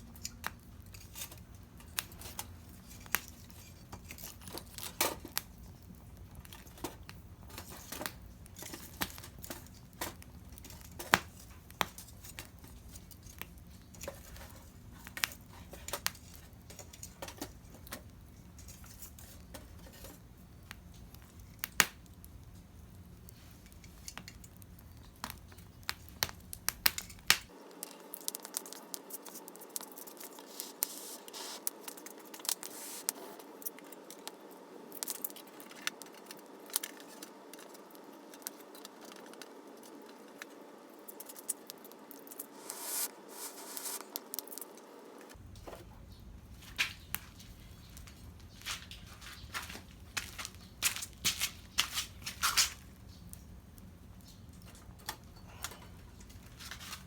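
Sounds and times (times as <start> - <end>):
low background hum: 0.0 - 57.0
wood fire crackling: 0.0 - 57.0.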